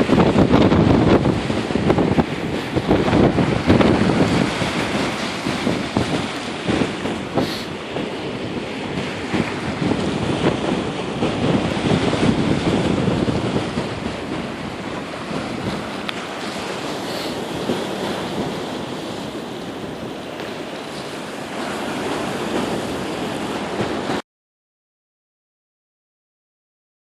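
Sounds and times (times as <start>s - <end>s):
waves surging against pier: 0.0s - 24.2s
wind buffeting microphone: 0.0s - 24.2s.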